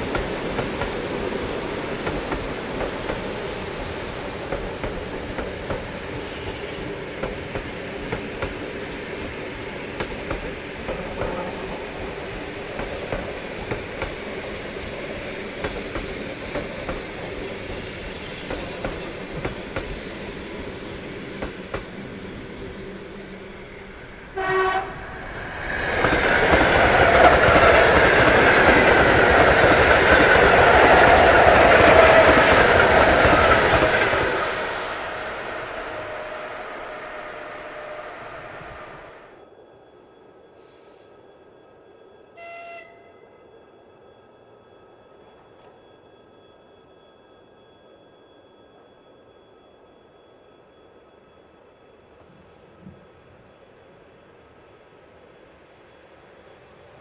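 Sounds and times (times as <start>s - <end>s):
train passing close by: 0.0s - 57.0s
train rumble and wheel clatter: 0.0s - 57.0s
train horn blast: 24.3s - 25.3s, 42.4s - 43.3s.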